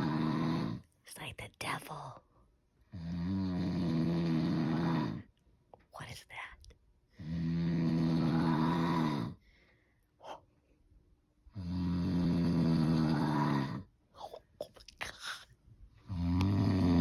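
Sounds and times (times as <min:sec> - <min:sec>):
deep growling snore: 0:00.0 - 0:00.8, 0:02.9 - 0:05.3, 0:07.2 - 0:09.4, 0:11.5 - 0:13.9, 0:16.0 - 0:17.0
quiet breathing: 0:09.3 - 0:11.0.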